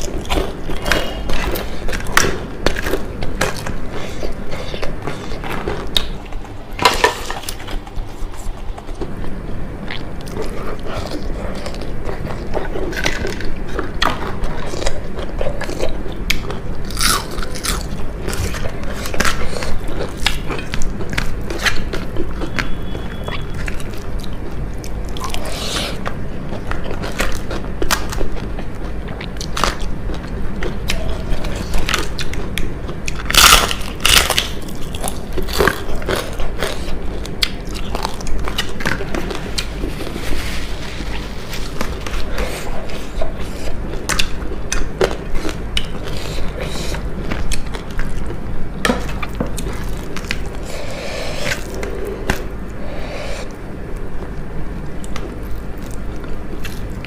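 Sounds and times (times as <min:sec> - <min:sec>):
crunchy food being chewed: 0:00.0 - 0:57.0.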